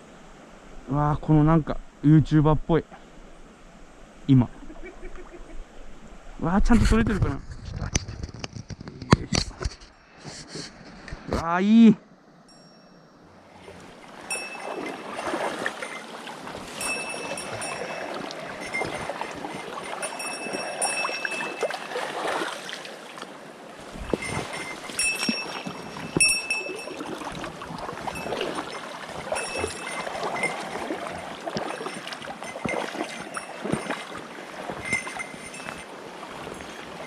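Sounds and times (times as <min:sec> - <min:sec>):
high metallic ringing: 0:12.4 - 0:22.2, 0:24.0 - 0:37.0
river water rushing: 0:13.2 - 0:37.0.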